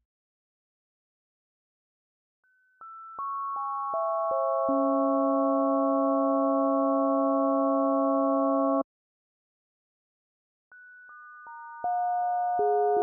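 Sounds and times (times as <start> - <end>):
sine tone chord: 3.2 - 8.8, 11.4 - 13.0.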